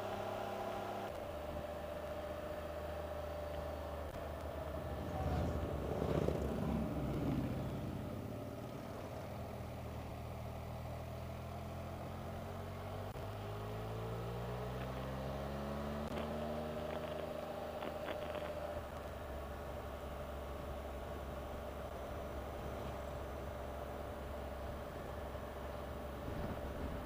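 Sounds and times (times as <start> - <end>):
motorcycle engine accelerating: 0.0 - 27.0
rush of noise: 4.6 - 9.1.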